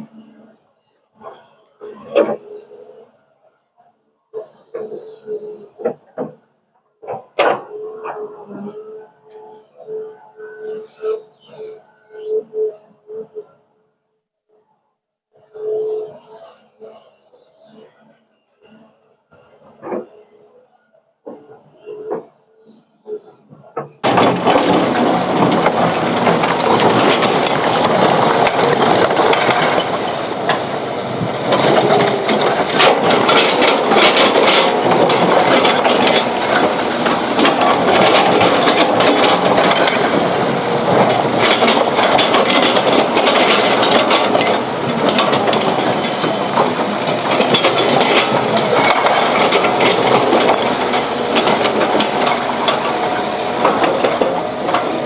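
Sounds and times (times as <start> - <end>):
excavator diesel engine running: 21.3 - 55.0
sharp clattering and rattling: 23.7 - 55.0.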